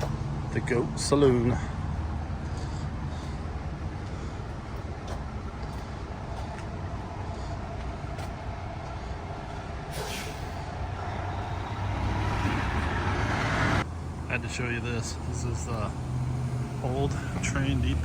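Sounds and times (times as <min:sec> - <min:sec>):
large vehicle engine running: 0:00.0 - 0:18.0
short air hiss: 0:09.9 - 0:10.7.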